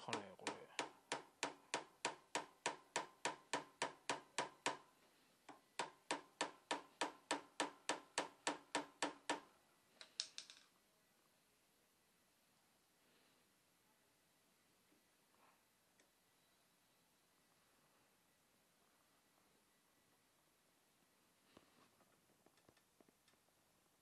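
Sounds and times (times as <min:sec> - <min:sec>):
plastic hammer tapping metal: 0:00.0 - 0:04.9, 0:05.5 - 0:10.6.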